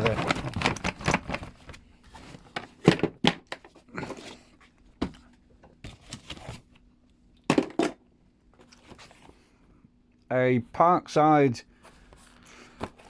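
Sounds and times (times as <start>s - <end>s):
faint steady hum: 0.0s - 13.0s
tools knocking and rustling: 7.5s - 8.0s.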